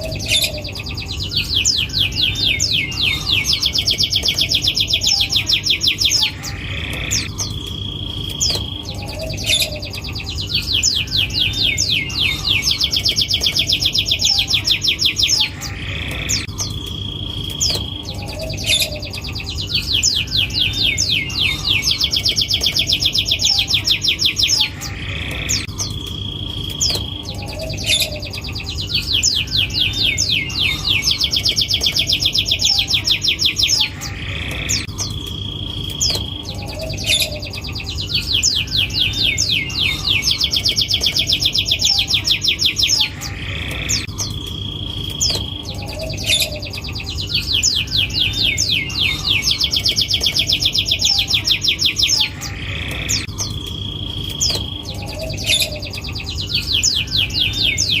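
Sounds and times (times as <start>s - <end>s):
canary singing: 0.0s - 58.0s.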